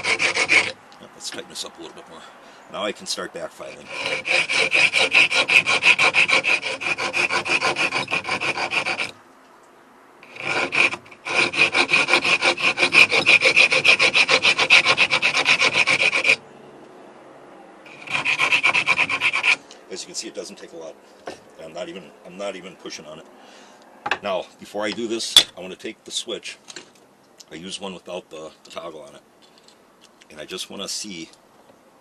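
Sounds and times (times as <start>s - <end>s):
hand file rasping on stone: 0.0s - 0.8s, 3.8s - 9.2s, 10.2s - 16.4s, 17.9s - 19.6s.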